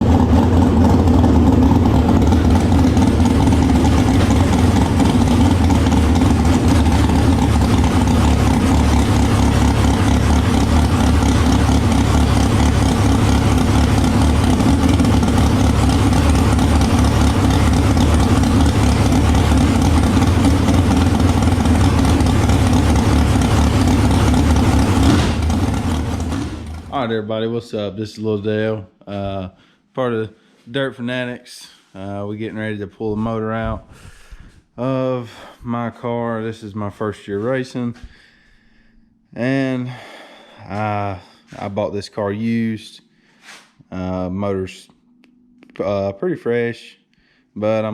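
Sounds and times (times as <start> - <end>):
loud car engine running: 0.0 - 27.1.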